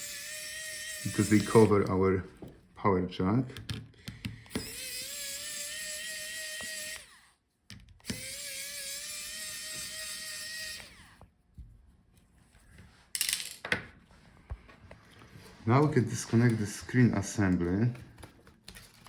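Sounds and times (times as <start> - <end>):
electric screwdriver whining: 0.0 - 2.0, 4.2 - 7.3, 8.0 - 11.2.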